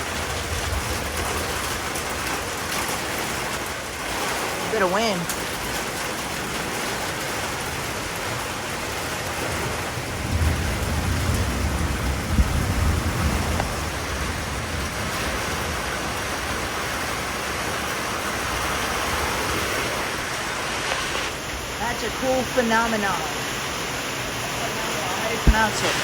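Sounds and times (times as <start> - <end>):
low thunder rumble: 0.0 - 3.5, 9.6 - 20.5
steady rain: 0.0 - 26.0
wind: 0.0 - 26.0.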